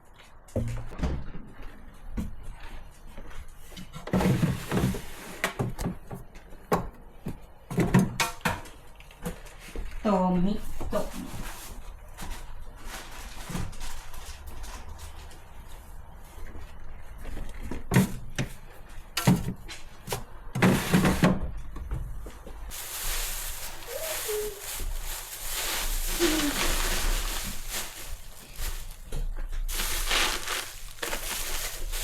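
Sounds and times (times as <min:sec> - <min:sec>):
rustling hiss: 0:22.7 - 0:32.0.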